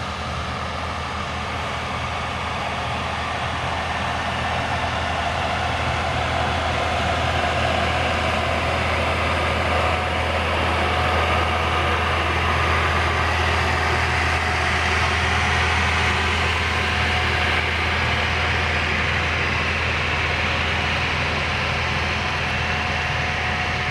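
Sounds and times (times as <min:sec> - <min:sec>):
diesel engine running: 0:00.0 - 0:23.9.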